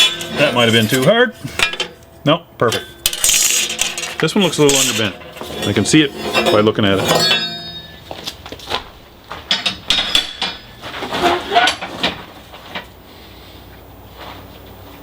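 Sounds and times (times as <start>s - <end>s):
steel bars clanking against metal: 0.0s - 8.2s, 9.4s - 12.3s.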